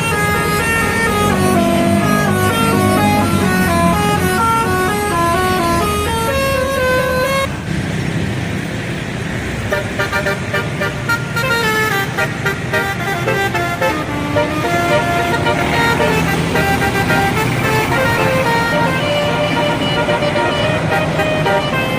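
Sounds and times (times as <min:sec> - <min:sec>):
bus horn playing melody: 0:00.0 - 0:07.5, 0:09.7 - 0:21.9
traffic noise: 0:00.0 - 0:21.9.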